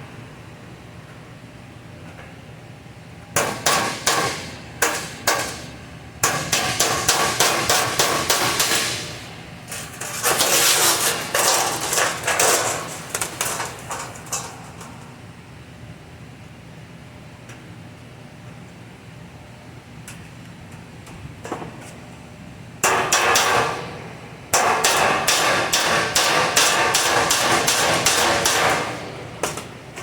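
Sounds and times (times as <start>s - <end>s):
hammer on sheet metal: 3.4s - 9.4s, 10.0s - 14.5s, 22.8s - 29.7s.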